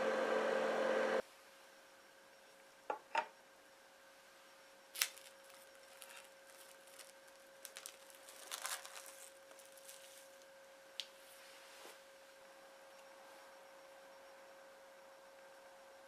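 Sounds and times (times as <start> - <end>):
faint steady hum: 0.0 - 16.0
rustling and handling noises: 5.0 - 12.1.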